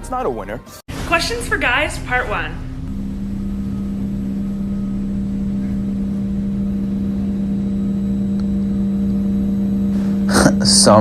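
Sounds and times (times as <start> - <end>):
steady low hum: 0.9 - 11.0.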